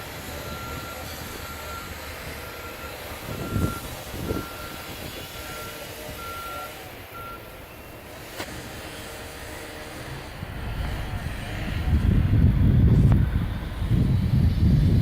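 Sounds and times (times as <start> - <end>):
heavy machinery rumble: 0.0 - 15.0
backup alarm beeping: 0.3 - 8.1.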